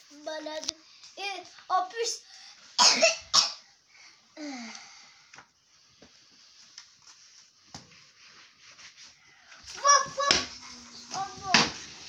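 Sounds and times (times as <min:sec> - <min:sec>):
child coughing: 0:02.8 - 0:03.6.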